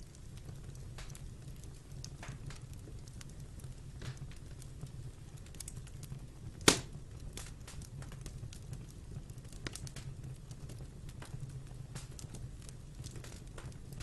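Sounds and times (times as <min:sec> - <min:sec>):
low fire rumble: 0:00.0 - 0:14.0
wood fire crackling: 0:00.0 - 0:14.0
loud sharp snap: 0:06.6 - 0:06.9.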